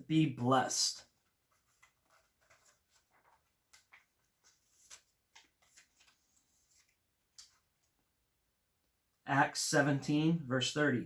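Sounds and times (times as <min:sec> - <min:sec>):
thin pages being turned: 0:01.0 - 0:08.0.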